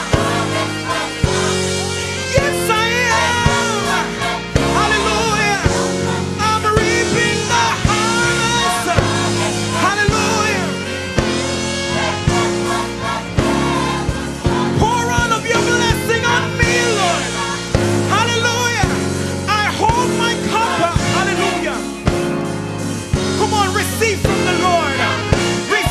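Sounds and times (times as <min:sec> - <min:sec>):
steady drumbeat: 0:00.0 - 0:19.1
low held chords: 0:00.0 - 0:25.9
person singing: 0:06.4 - 0:10.9.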